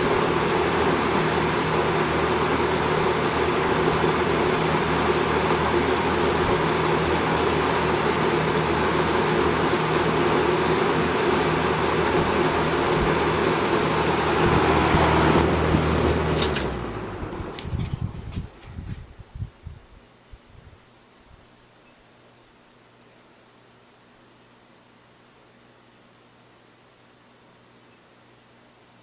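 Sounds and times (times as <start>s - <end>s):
box fan running: 0.0s - 21.7s.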